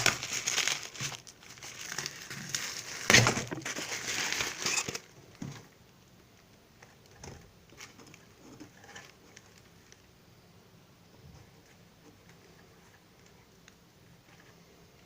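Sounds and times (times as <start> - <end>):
packaging crinkling: 0.0 - 5.2.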